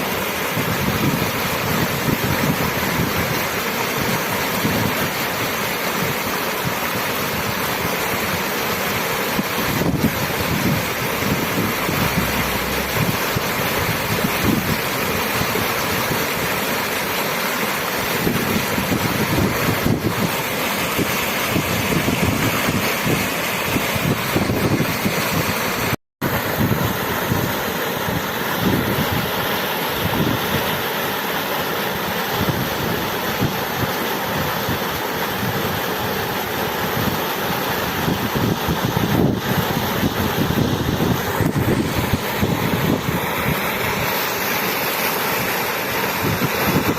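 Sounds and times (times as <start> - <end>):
rushing water: 0.0 - 46.9.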